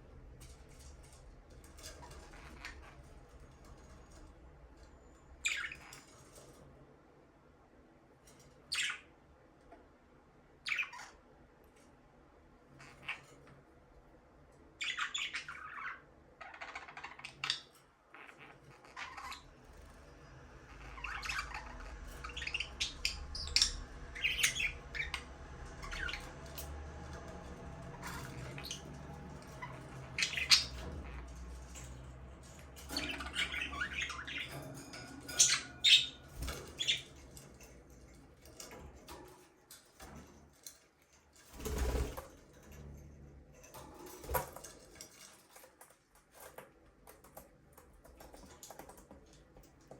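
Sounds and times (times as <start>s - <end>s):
budgies chirping and squawking: 1.8s - 3.4s, 5.4s - 6.0s, 10.7s - 11.2s, 14.8s - 19.9s, 20.7s - 37.7s.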